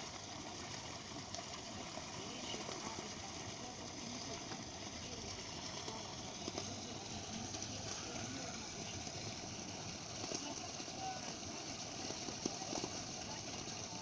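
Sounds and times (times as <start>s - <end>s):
waterfall splashing: 0.0s - 14.0s.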